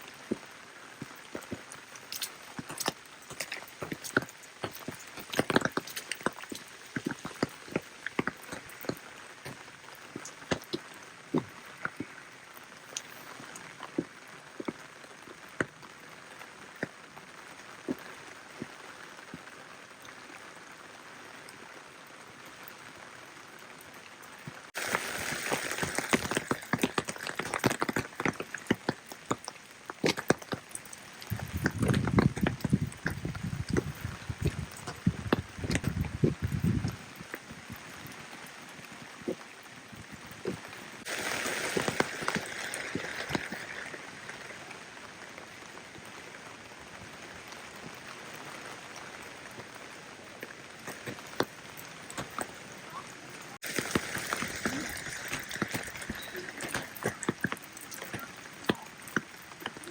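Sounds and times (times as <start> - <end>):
rain drop impacts: 0.0 - 59.9
rain falling: 0.0 - 59.9.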